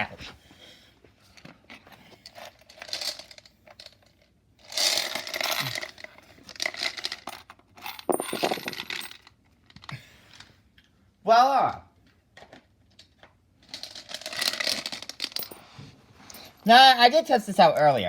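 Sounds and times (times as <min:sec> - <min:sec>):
coins clattering and clinking: 0:04.7 - 0:09.3, 0:13.6 - 0:15.6.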